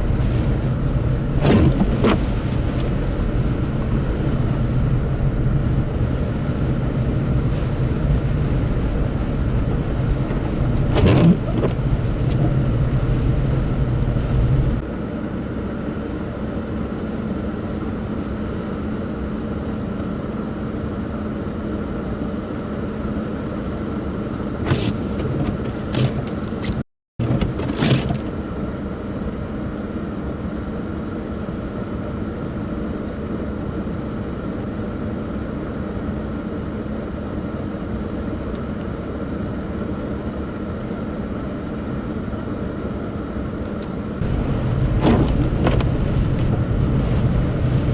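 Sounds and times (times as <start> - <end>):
motor vehicle running: 43.6 - 47.9.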